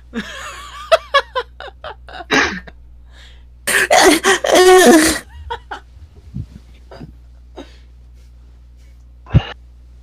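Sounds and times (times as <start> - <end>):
person sneezing: 9.3 - 9.6.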